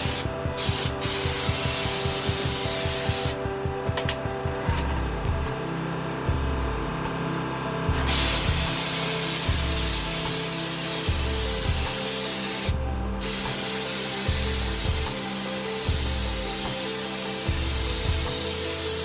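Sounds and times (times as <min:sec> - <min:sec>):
spray gun hissing: 0:00.0 - 0:03.5, 0:08.0 - 0:19.0.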